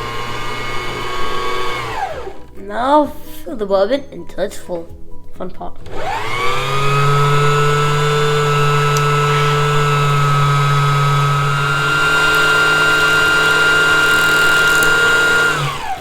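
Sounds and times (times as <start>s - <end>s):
sewing machine motor winding: 0.0s - 2.5s, 5.9s - 16.0s.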